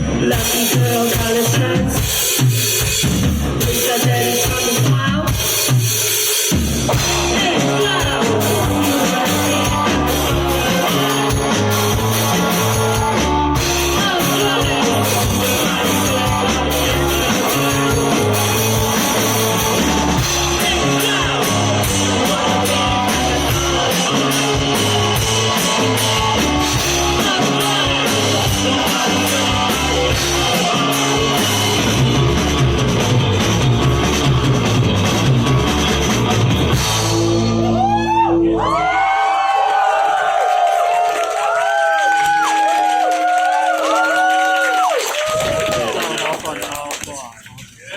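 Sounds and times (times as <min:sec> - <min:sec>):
drum kit with fast cymbals: 0:00.0 - 0:38.1
live rock band playing: 0:00.0 - 0:38.9
bass line: 0:00.0 - 0:39.4
electric guitar: 0:06.6 - 0:39.4.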